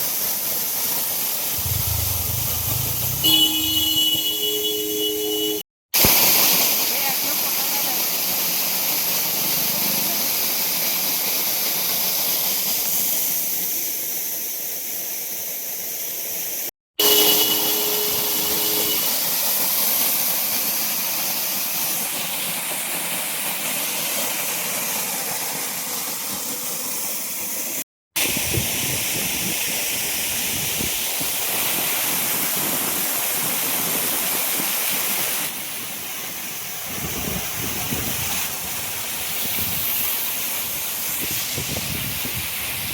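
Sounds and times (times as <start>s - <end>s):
two-pitch tone: 1.6s - 5.6s, 17.0s - 19.1s.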